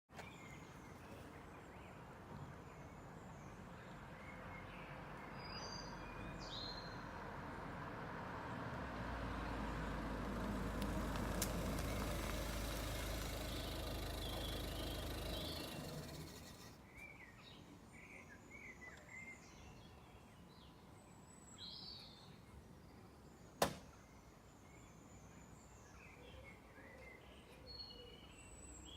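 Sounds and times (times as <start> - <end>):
car rolling to a stop: 7.5 - 16.8
birds chirping: 8.5 - 28.9
sharp klunk: 23.6 - 23.9.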